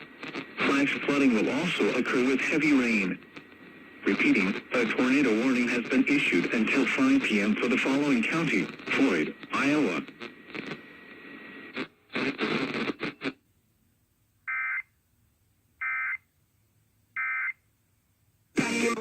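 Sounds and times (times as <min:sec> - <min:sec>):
crackly radio noise: 0:00.0 - 0:13.4, 0:18.6 - 0:19.0.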